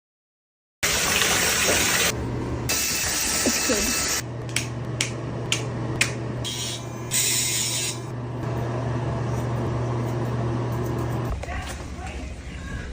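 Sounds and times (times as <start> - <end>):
running water from a tap: 0.8 - 4.2.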